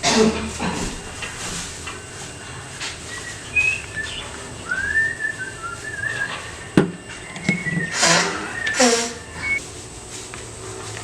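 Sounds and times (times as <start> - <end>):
steady background hiss: 0.0 - 11.0
thin high whistling notes: 1.5 - 9.6.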